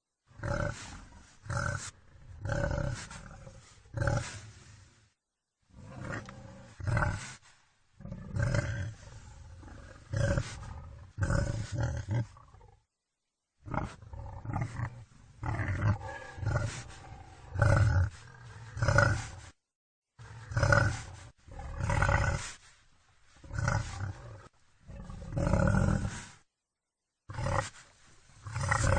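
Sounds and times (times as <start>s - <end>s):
wild boar grunting: 0.4s - 4.7s, 5.7s - 7.4s, 8.0s - 12.8s, 13.6s - 19.5s, 20.2s - 22.6s, 23.4s - 26.4s, 27.3s - 27.8s, 28.4s - 28.9s.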